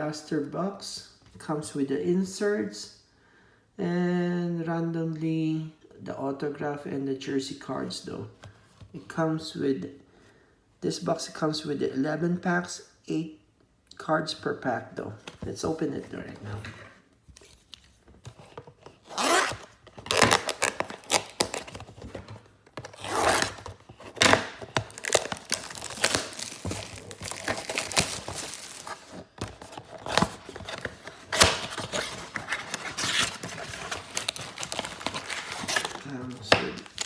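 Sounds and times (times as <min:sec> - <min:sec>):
cardboard box tearing: 0:18.3 - 0:37.0
cardboard snapping: 0:19.4 - 0:37.0.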